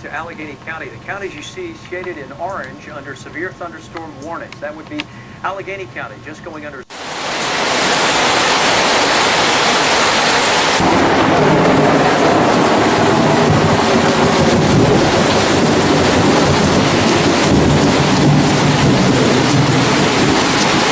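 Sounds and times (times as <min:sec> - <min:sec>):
loud rushing noise: 0:06.9 - 0:20.9.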